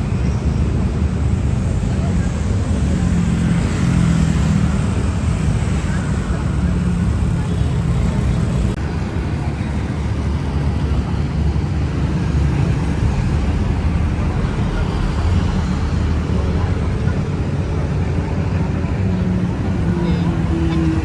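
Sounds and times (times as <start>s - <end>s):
low outdoor rumble: 4.8s - 21.0s.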